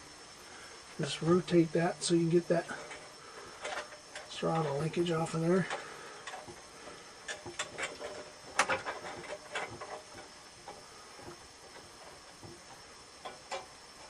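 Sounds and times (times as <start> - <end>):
small metal clicks and rattles: 2.8 - 14.0.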